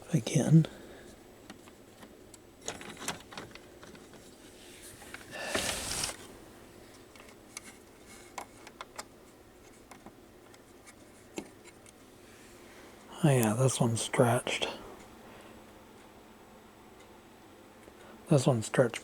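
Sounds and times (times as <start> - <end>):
loud scraping rustle: 4.8 - 6.3.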